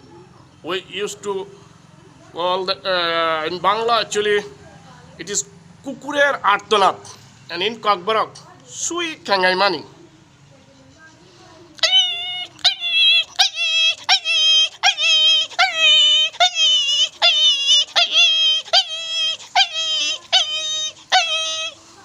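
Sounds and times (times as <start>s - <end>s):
man imitating dog whimpering: 11.8s - 21.8s.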